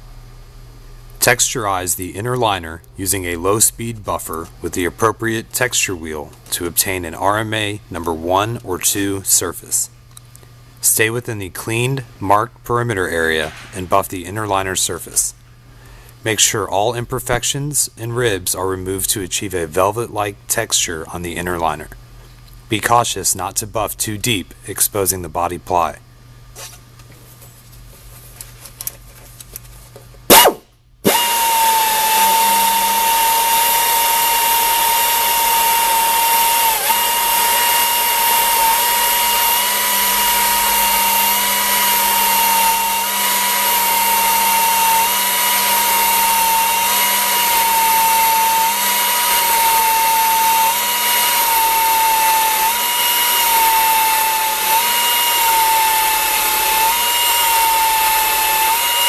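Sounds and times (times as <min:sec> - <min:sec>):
tire buffer whining: 0:30.3 - 0:59.0.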